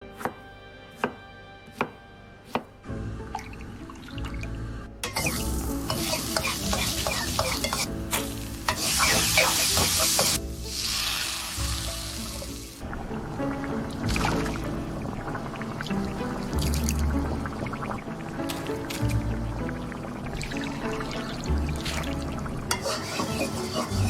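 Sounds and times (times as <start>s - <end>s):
background music: 0.0s - 24.0s
food sizzling in a pan: 5.0s - 17.9s, 20.4s - 24.0s.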